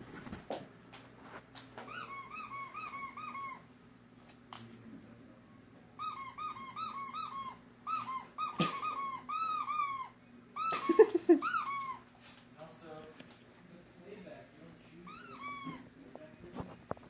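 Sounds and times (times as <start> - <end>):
rubber toy squeaks: 1.9 - 3.6, 6.0 - 10.8, 11.4 - 12.0, 15.1 - 15.8.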